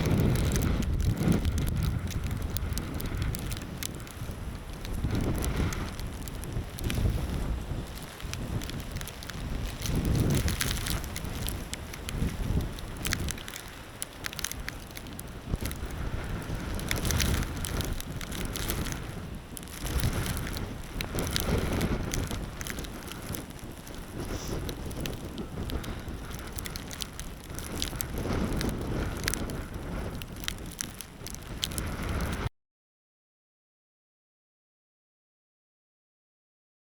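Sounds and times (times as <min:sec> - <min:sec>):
snow ticking against camera: 0:00.0 - 0:32.5
wind buffeting microphone: 0:00.0 - 0:32.5.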